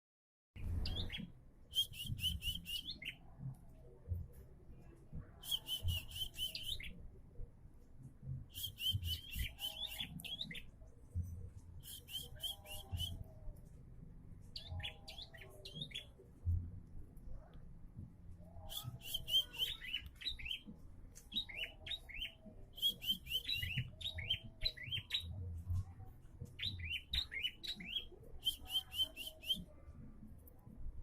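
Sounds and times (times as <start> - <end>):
faint low rumble: 10.1 - 19.1.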